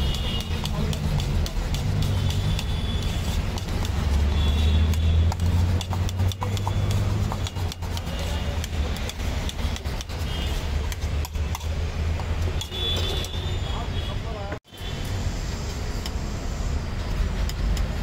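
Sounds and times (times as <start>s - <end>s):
sharp clicks and clatter: 0.0s - 13.4s
road traffic rumbling: 0.0s - 18.0s.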